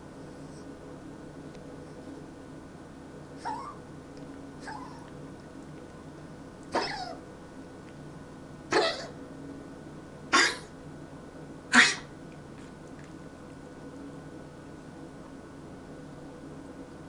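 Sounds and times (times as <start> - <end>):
pet coughing: 3.4 - 3.8, 6.7 - 7.2, 8.7 - 9.2, 10.3 - 10.8, 11.7 - 12.1.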